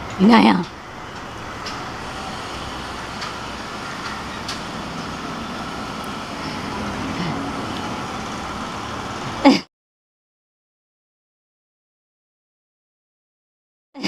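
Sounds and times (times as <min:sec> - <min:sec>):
steady background noise: 0:00.0 - 0:09.6.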